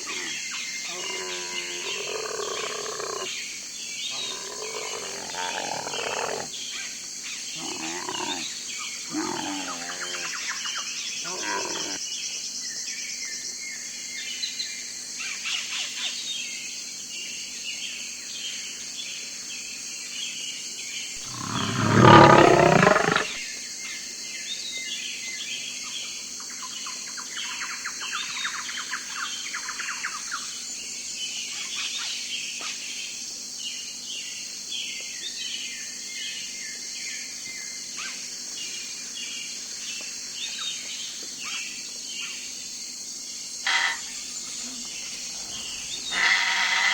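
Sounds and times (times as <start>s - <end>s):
loud animal call: 0.0s - 3.3s, 4.1s - 6.5s, 11.2s - 12.0s, 21.2s - 23.4s
small birds chirping: 21.2s - 23.4s.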